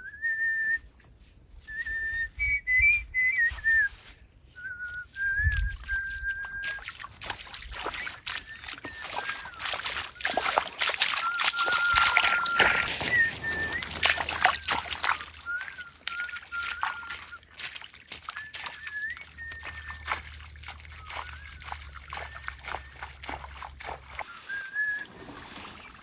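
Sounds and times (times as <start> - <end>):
thin whistled tone: 0.0 - 26.0
splashing in muddy water: 5.4 - 26.0.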